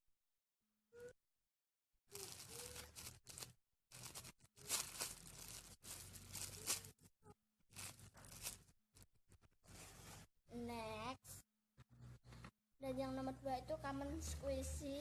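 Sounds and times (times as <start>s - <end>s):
squishy toy squeezed crinkling: 2.1s - 7.0s.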